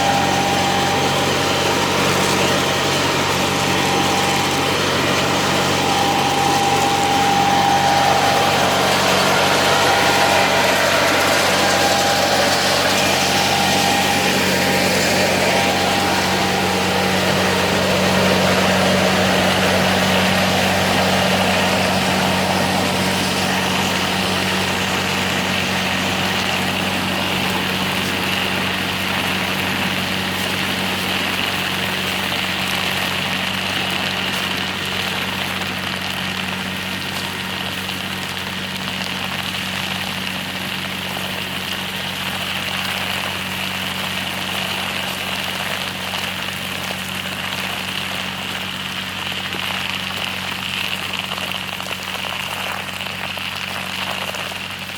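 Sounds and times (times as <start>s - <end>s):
machinery hiss: 0.0s - 38.3s
harvesting machine engine hum: 0.0s - 54.9s.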